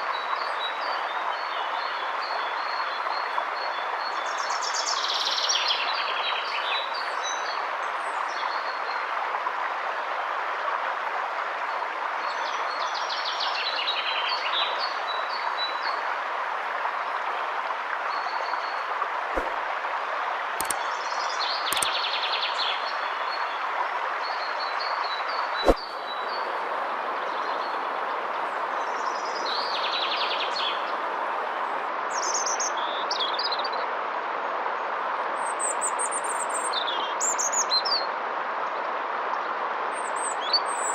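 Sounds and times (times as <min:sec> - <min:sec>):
river water rushing: 0:13.6 - 0:32.2
songbirds chirping: 0:20.4 - 0:33.8
sharp clicks: 0:20.6 - 0:20.8, 0:21.7 - 0:21.9.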